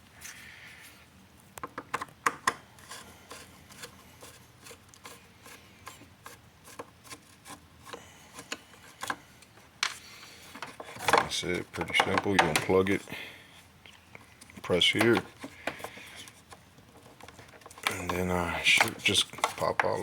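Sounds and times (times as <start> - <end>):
hand tool clicking and scraping: 2.3 - 10.0.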